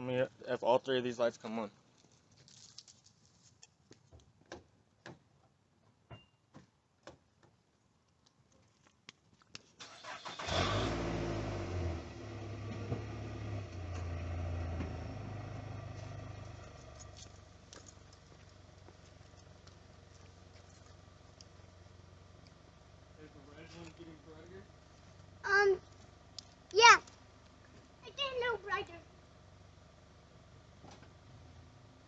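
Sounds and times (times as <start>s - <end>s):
car engine cranking and idling: 9.8s - 32.0s.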